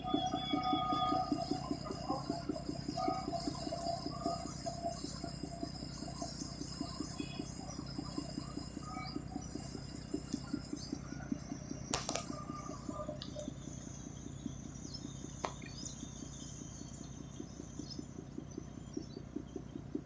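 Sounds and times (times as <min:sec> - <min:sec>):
boat engine chugging: 0:00.0 - 0:20.0
insects shrilling: 0:00.2 - 0:14.3
sharp clicks: 0:10.0 - 0:13.5.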